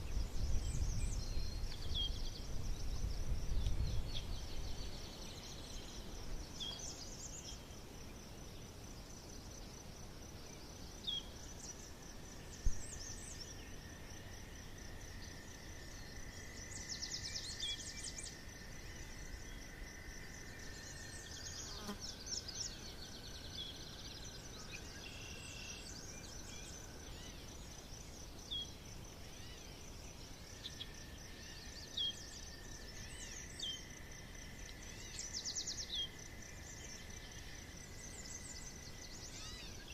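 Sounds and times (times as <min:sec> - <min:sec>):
pulsing insect trill: 0:10.9 - 0:39.9.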